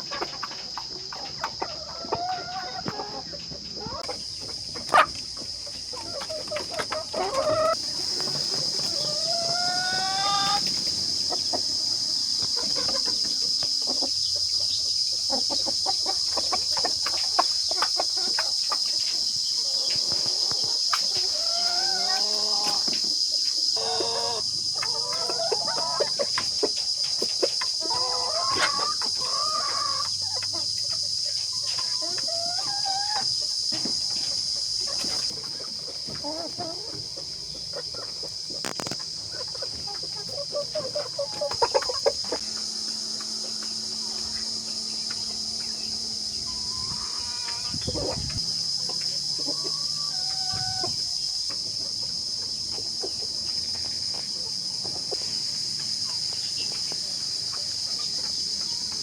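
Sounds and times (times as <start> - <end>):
chickens clucking: 0.0 - 59.0
rooster crowing: 49.5 - 51.0.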